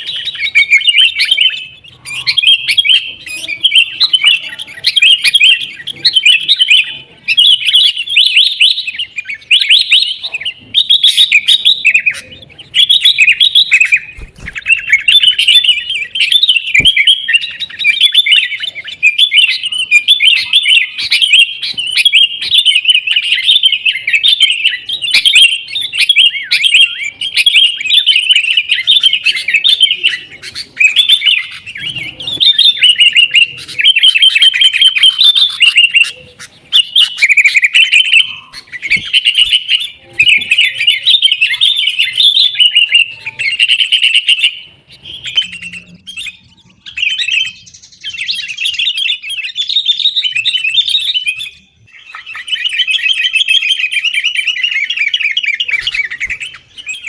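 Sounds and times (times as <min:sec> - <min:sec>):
birds chattering and calling: 0:00.0 - 0:57.0.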